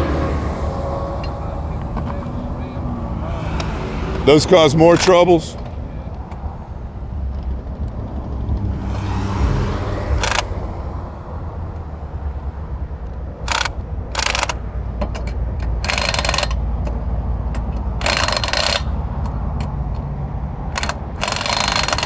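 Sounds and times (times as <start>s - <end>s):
idling engine rumble: 0.0s - 22.0s
pneumatic impact wrench bursts: 10.1s - 10.6s, 13.5s - 14.6s, 15.8s - 16.6s, 18.0s - 19.0s, 20.8s - 22.0s.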